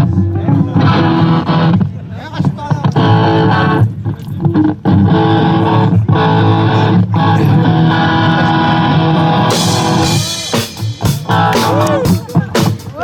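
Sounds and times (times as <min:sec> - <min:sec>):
guitar: 0:00.0 - 0:13.0
rock band playing live: 0:00.0 - 0:13.0.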